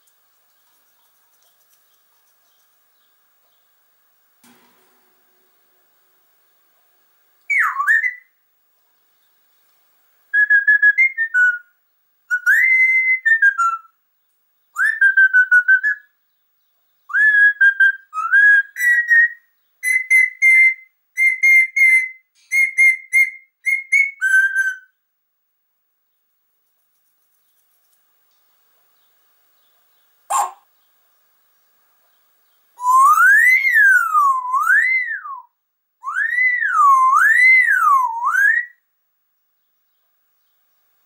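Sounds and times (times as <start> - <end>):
loud whistled phrases: 17.1 - 24.9, 32.8 - 38.8.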